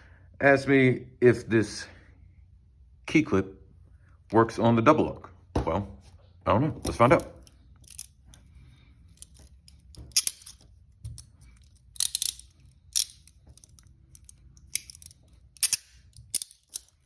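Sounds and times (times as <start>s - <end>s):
handcuffs clicking and rattling: 6.9s - 17.0s.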